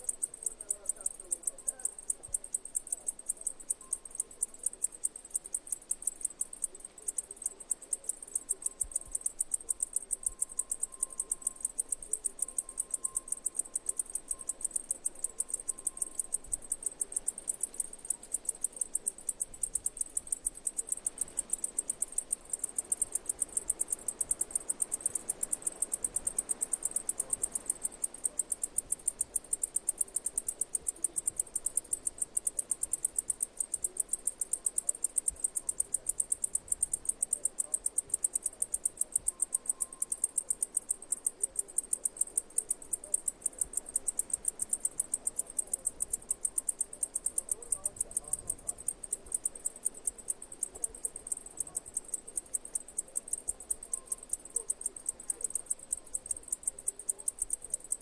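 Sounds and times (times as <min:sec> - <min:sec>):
insect chirping: 0:00.0 - 0:58.0.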